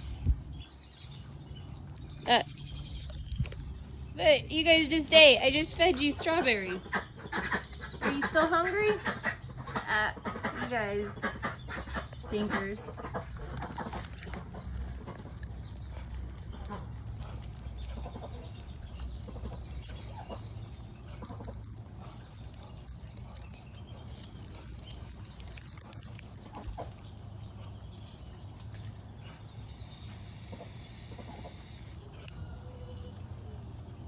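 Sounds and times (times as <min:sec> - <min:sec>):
ducks pecking and nibbling: 0:00.0 - 0:34.0
steady low rumble: 0:00.0 - 0:34.0.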